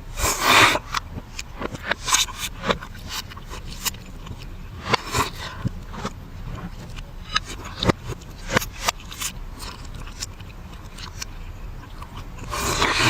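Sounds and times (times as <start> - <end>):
low steady hum: 0.0 - 13.0
reversed chewing and utensil sounds: 0.0 - 13.0.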